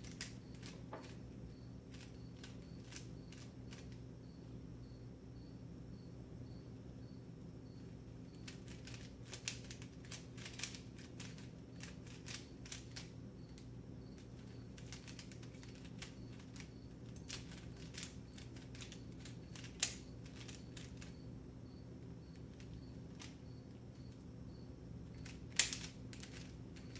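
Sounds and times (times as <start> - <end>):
plastic speed cube clicking: 0.0 - 1.0, 8.4 - 13.6, 14.2 - 21.1, 25.2 - 26.9.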